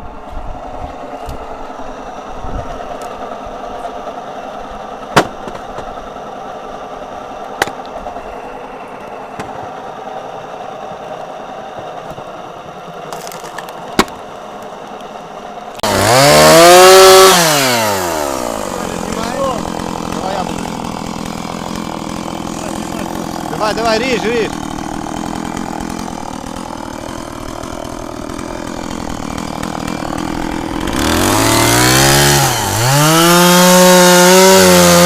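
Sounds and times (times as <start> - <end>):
chainsaw engine idling and revving: 0.0 - 35.0
sharp knocks: 5.1 - 5.9.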